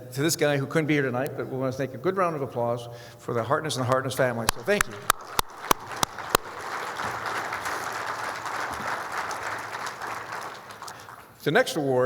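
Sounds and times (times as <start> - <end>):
loud single claps: 4.4 - 11.3
crowd applauding: 4.5 - 11.5.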